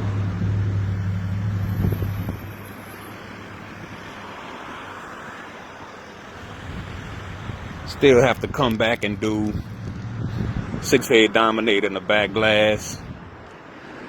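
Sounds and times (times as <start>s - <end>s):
road and traffic noise: 0.0s - 14.0s
vehicle engine humming: 0.0s - 14.0s.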